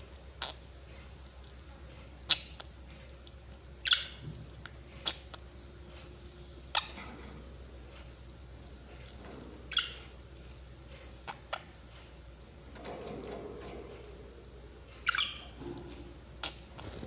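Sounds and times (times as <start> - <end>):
parrots chirping: 15.0 - 15.5.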